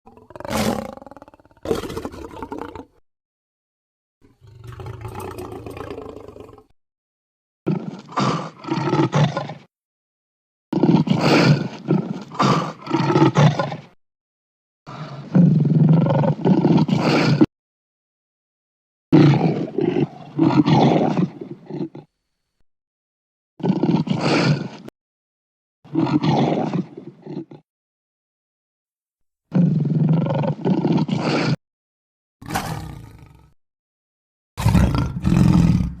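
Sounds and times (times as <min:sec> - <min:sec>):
lion roaring: 0:00.1 - 0:03.0, 0:04.3 - 0:06.7, 0:07.7 - 0:09.7, 0:10.8 - 0:13.9, 0:14.9 - 0:17.5, 0:19.2 - 0:22.1, 0:25.9 - 0:27.6, 0:29.5 - 0:31.6, 0:32.4 - 0:33.6, 0:34.6 - 0:36.0.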